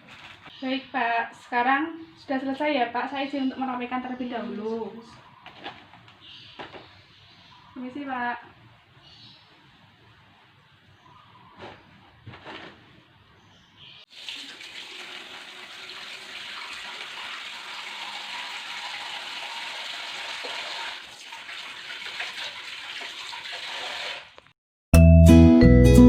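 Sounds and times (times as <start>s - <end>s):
tap water running into sink: 14.1s - 24.4s.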